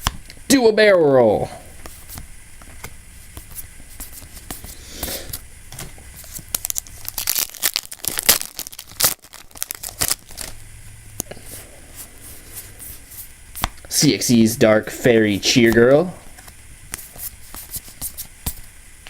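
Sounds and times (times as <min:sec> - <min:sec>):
foil wrapper tearing and crinkling: 0:06.1 - 0:10.6.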